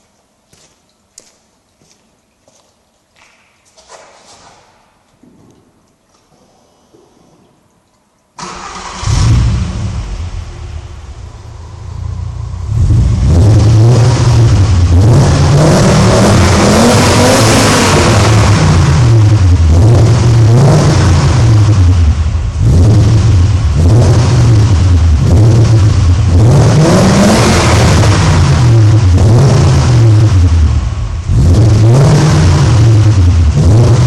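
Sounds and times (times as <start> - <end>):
car engine revving: 8.4 - 34.0
car engine starting: 8.4 - 34.0.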